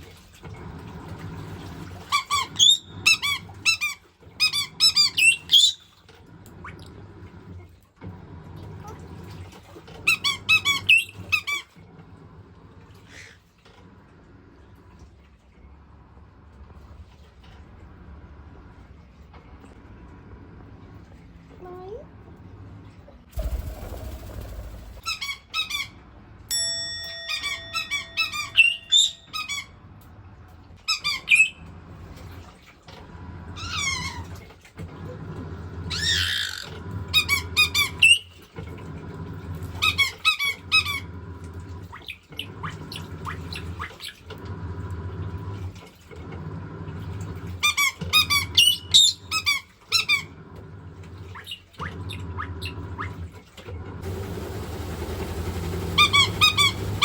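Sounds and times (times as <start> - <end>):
washing machine rumble: 0.0 - 57.0
parrot chirping squawks: 2.1 - 5.9, 10.1 - 11.6, 25.0 - 26.0, 27.2 - 29.8, 30.9 - 31.6, 33.6 - 34.3, 35.9 - 38.3, 47.6 - 50.3, 55.9 - 57.0.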